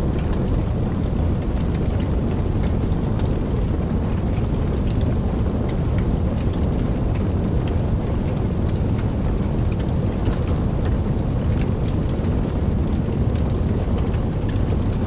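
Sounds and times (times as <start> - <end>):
campfire flames rumbling: 0.0 - 15.0
fire crackling and popping: 0.0 - 15.0.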